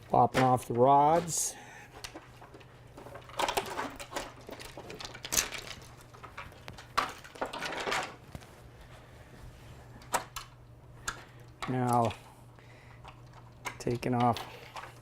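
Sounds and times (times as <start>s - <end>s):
rustling clatter: 2.0s - 9.8s.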